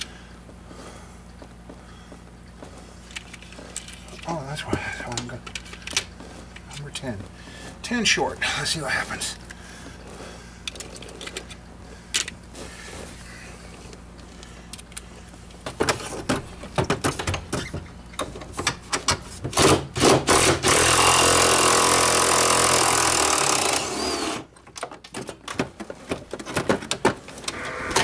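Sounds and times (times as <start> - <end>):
power tool running: 20.3 - 24.5.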